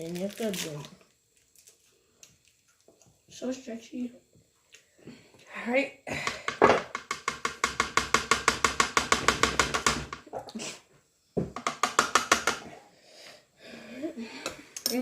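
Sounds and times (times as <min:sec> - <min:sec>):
rapid rhythmic knocking: 0:06.9 - 0:10.3.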